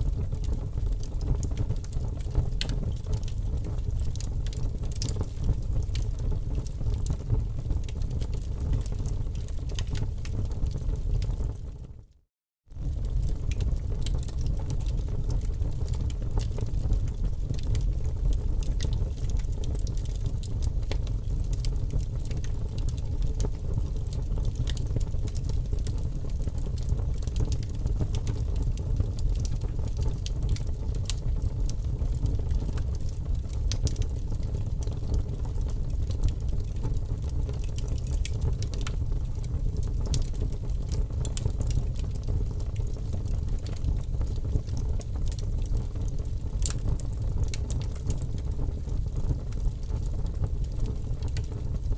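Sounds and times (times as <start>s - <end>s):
fire crackling and popping: 0.0s - 11.8s, 12.7s - 51.9s
rushing of fire flames: 12.8s - 51.8s.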